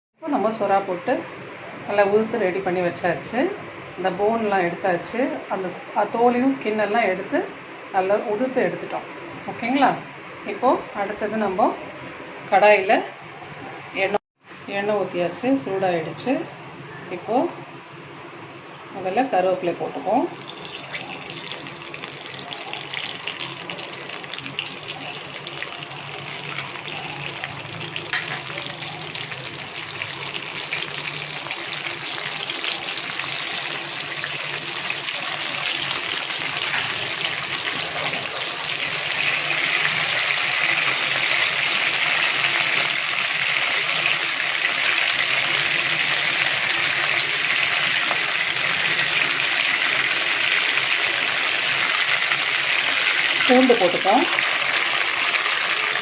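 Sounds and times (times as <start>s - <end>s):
leaves sizzling in hot oil: 17.2s - 56.0s.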